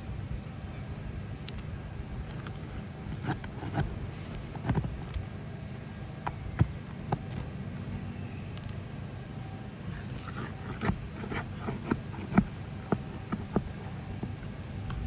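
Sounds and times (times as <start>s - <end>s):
shingles scraping: 2.1s - 5.4s, 9.9s - 15.0s.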